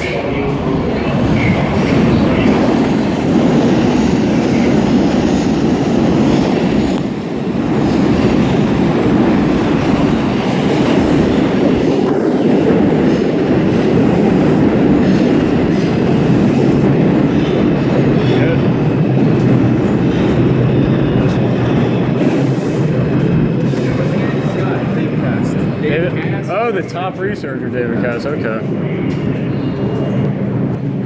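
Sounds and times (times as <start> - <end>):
subway train running: 0.0 - 31.0.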